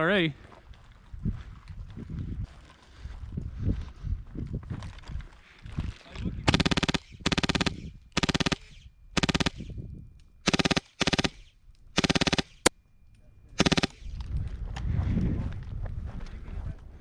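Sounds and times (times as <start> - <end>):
airsoft machine gun bursts: 6.5 - 9.7, 10.4 - 12.7, 13.6 - 14.2.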